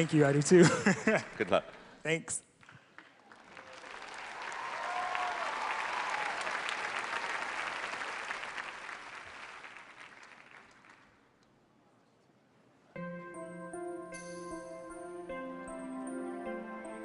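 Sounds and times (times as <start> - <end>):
studio audience applauding: 0.0 - 0.6, 2.6 - 11.2.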